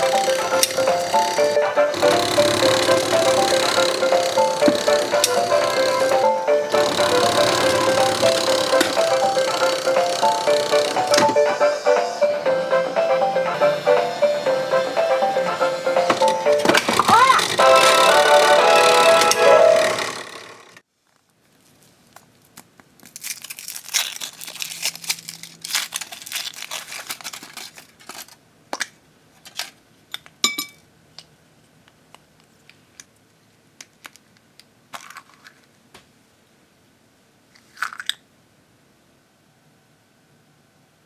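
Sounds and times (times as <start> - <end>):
crinkly wrapper tearing: 22.1 - 28.4.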